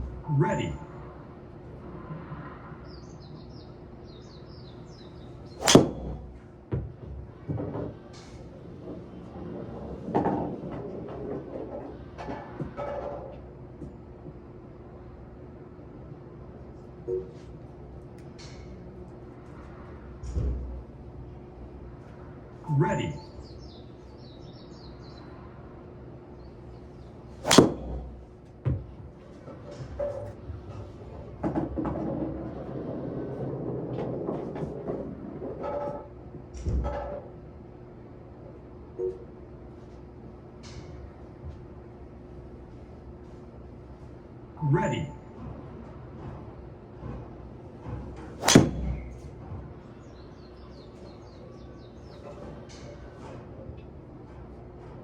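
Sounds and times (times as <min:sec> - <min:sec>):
golf club striking ball: 0:05.6 - 0:06.4, 0:27.4 - 0:28.2, 0:48.4 - 0:49.2.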